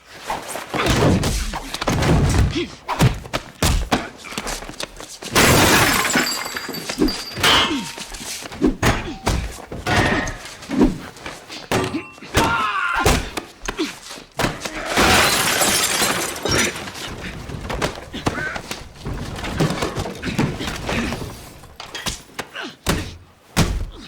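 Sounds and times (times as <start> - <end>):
impacts thuds and crashes: 5.3 - 13.5
glass breaking: 5.4 - 8.1, 14.9 - 17.1.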